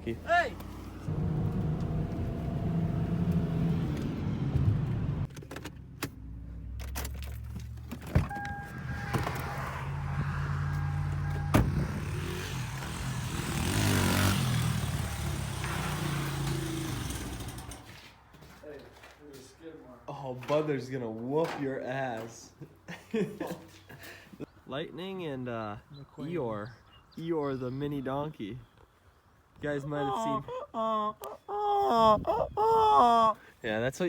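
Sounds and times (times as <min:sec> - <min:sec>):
vehicle engine running: 0:00.6 - 0:05.3, 0:08.4 - 0:17.9.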